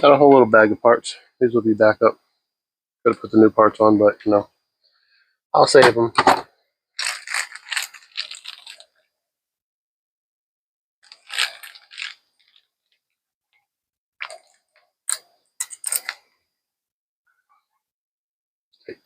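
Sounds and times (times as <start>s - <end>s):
plastic bag crinkling: 7.0s - 9.0s, 11.0s - 13.1s, 14.2s - 14.8s.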